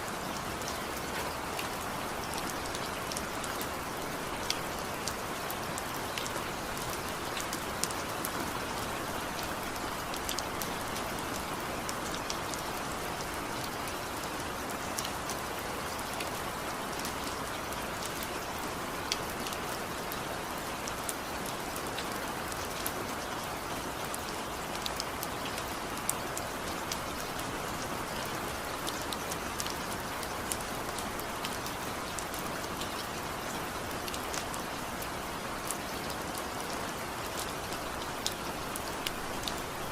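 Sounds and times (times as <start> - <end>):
steady rainfall: 0.0 - 39.9
raindrops ticking: 0.6 - 16.3, 24.0 - 39.9.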